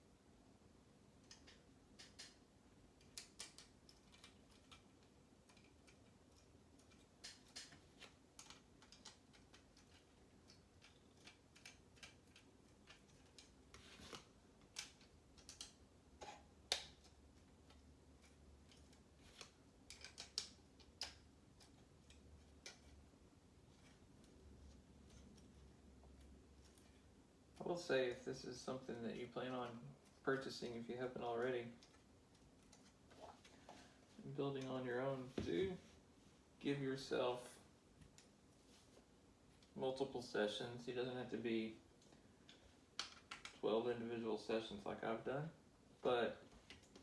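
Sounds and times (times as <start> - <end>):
plastic bricks clicking and snapping: 1.2 - 2.4, 3.0 - 23.0, 42.5 - 43.6.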